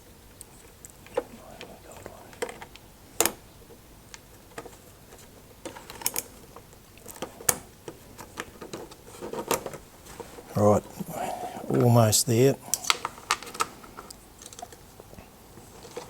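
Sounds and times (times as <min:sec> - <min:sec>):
metal parts clicking and tapping: 0:04.6 - 0:06.4, 0:12.7 - 0:14.8.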